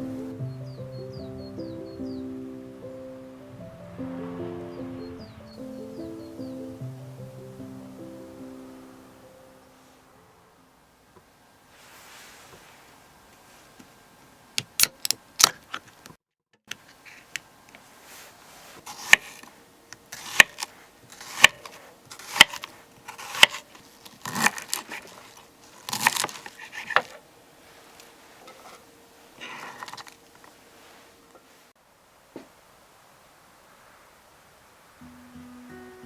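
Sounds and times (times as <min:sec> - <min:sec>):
faint steady tone: 0:00.0 - 0:11.6.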